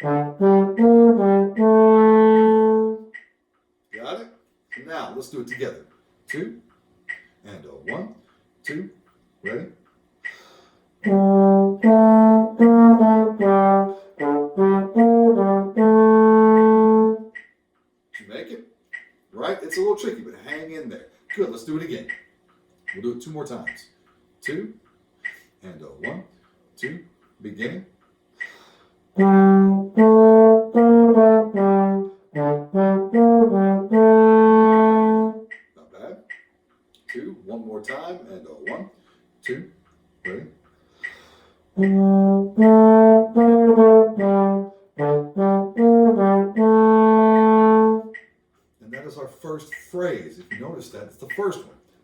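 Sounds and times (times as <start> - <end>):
low brass instrument melody: 0.0 - 3.2, 11.0 - 17.4, 29.2 - 35.5, 41.8 - 48.2
count-off: 0.0 - 52.0.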